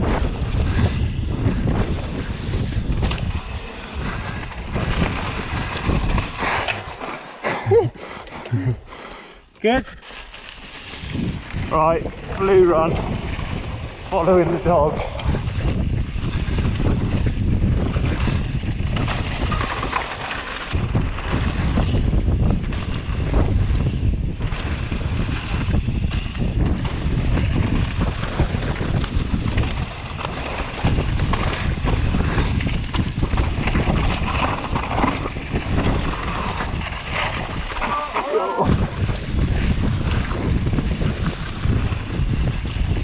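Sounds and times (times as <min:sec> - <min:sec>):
wind on microphone: 0:00.0 - 0:07.0, 0:10.7 - 0:20.1, 0:20.7 - 0:43.0
tyres rumbling on dirt: 0:00.0 - 0:07.8, 0:10.8 - 0:43.0.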